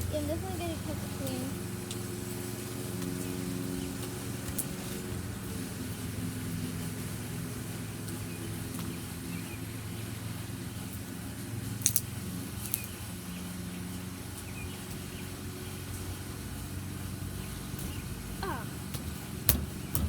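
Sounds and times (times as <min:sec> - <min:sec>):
low mechanical hum: 0:00.0 - 0:20.0.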